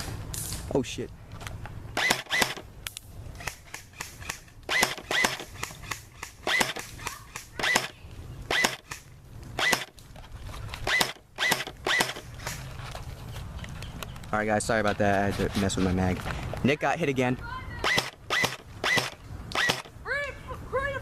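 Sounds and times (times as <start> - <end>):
airsoft gun shots: 2.0 - 2.7, 3.4 - 9.0, 9.6 - 10.0, 10.8 - 12.3, 17.8 - 19.9.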